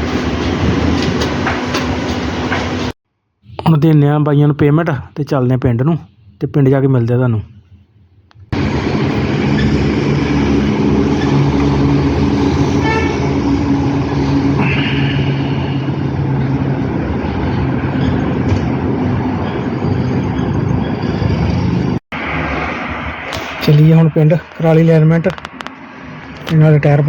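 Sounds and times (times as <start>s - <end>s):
road traffic noise: 0.0s - 3.0s, 8.2s - 27.0s
vehicle engine running: 8.5s - 22.0s
short horn toot: 12.7s - 13.5s.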